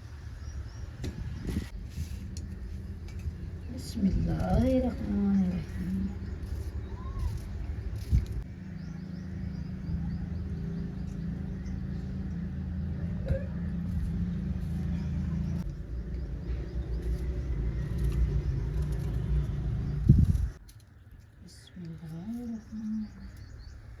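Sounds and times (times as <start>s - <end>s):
engine running: 1.5s - 20.6s.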